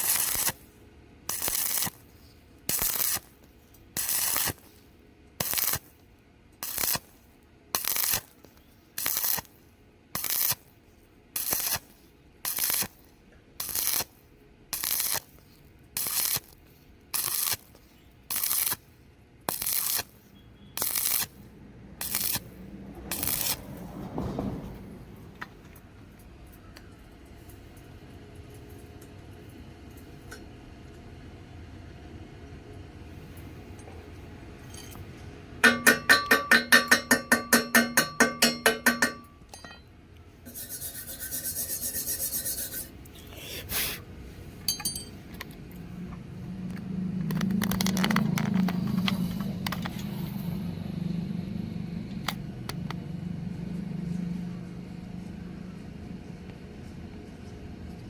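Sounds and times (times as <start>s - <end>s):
steady low hum: 16.7s - 58.0s
hammer striking steel: 35.6s - 39.9s, 44.7s - 45.2s
high-pitched scraping: 40.5s - 43.0s.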